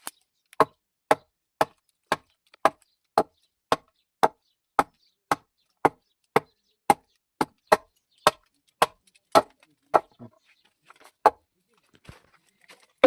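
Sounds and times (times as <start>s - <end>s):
tool striking wood: 0.6s - 10.2s.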